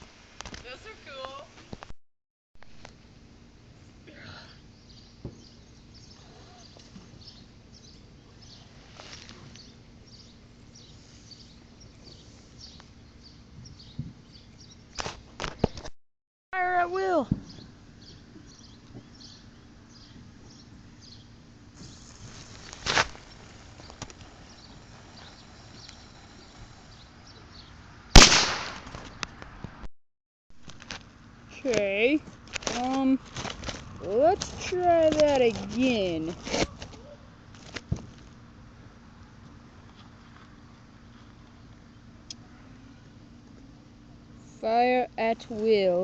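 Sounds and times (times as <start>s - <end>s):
faint outdoor background noise: 0.0s - 2.0s, 2.6s - 15.9s, 16.6s - 29.9s, 30.6s - 46.0s
firework bang: 28.2s - 29.1s
low steady hum: 30.6s - 46.0s.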